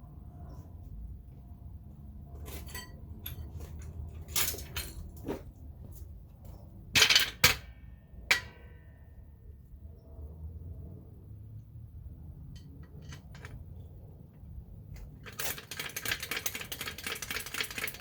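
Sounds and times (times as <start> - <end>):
metal tools clinking: 2.3 - 5.4, 12.5 - 13.9.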